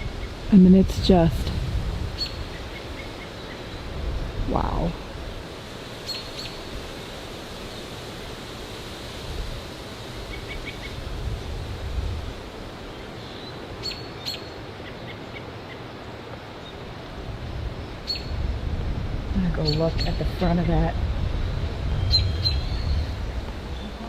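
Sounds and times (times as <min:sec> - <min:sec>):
wind rumbling: 0:00.0 - 0:24.0
small birds chirping: 0:21.4 - 0:24.0.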